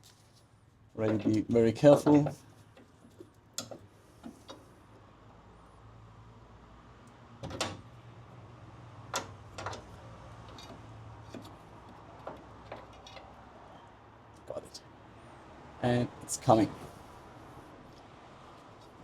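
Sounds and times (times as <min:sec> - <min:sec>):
hand tools knocking and scraping: 0:01.0 - 0:02.9.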